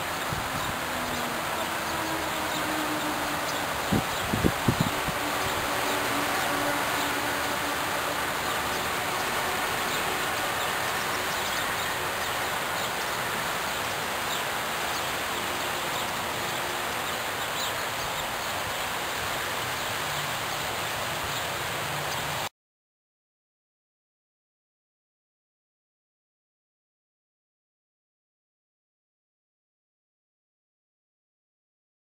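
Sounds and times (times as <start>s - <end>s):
outdoor background noise: 0.0s - 22.5s.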